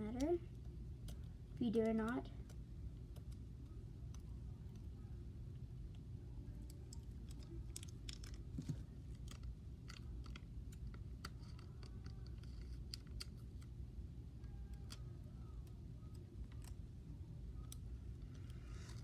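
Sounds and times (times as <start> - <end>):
low steady hum: 0.0 - 19.0
sticky tape crinkling: 6.5 - 13.7.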